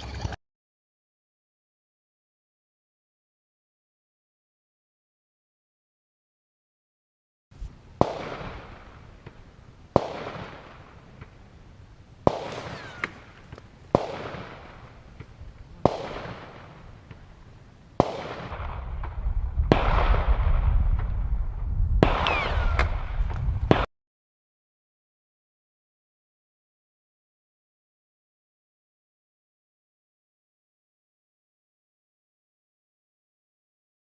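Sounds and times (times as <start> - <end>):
sharp bangs: 7.6 - 11.4, 12.2 - 17.3, 18.0 - 23.9
low rumble: 18.5 - 23.8.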